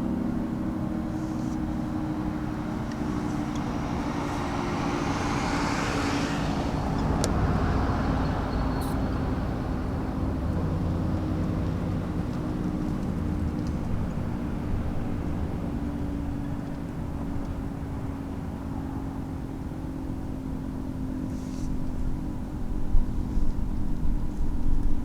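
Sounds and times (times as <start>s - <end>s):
low hum of traffic: 0.0s - 25.0s
vehicle passing by: 1.0s - 16.4s.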